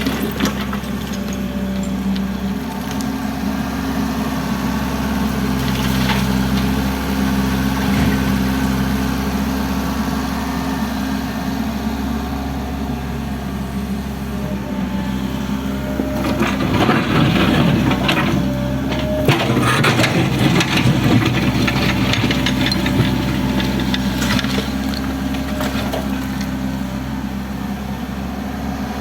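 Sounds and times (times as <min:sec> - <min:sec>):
debris cracking and knocking: 0:00.0 - 0:03.1, 0:16.0 - 0:26.6
diesel engine running: 0:00.0 - 0:29.0.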